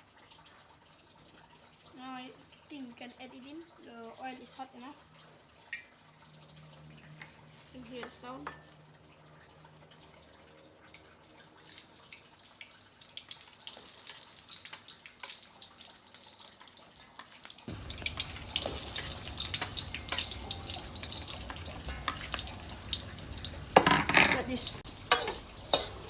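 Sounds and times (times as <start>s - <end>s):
meat sizzling in hot oil: 11.5s - 26.0s.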